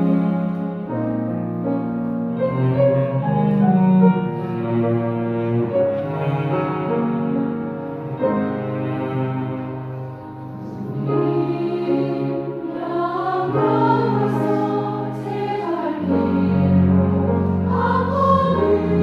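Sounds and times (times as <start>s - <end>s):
double bass: 0.0s - 12.2s, 16.0s - 19.0s
cello and bowed strings: 0.0s - 19.0s
piano: 0.0s - 19.0s.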